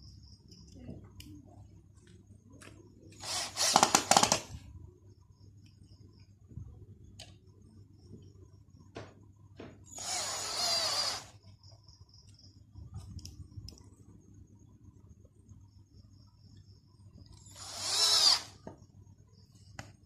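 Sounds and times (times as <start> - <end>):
cordless drill driving screw: 3.2 - 4.4, 9.9 - 11.4, 17.4 - 18.6.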